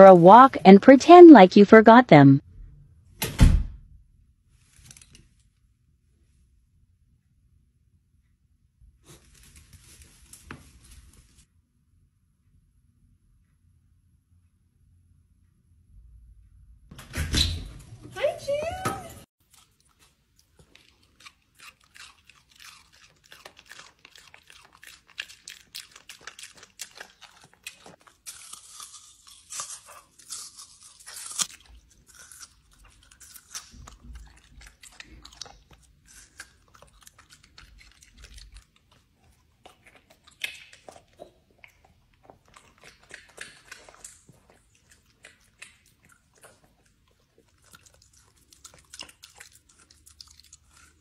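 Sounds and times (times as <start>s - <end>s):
pet chewing and crunching: 18.2s - 51.0s.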